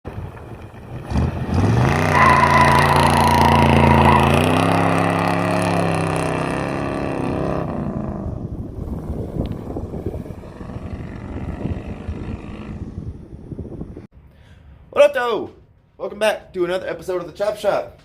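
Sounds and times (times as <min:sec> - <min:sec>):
engine whine: 0:00.3 - 0:14.1
vehicle engine revving: 0:00.9 - 0:13.8.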